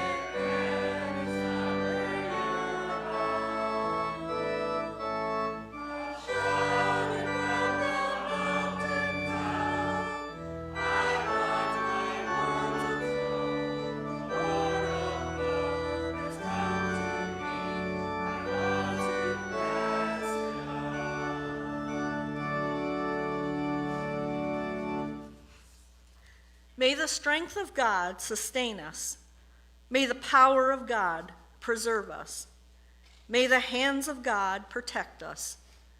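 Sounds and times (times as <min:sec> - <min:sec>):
voices singing: 0:00.0 - 0:22.6
church organ playing a hymn: 0:00.0 - 0:25.5.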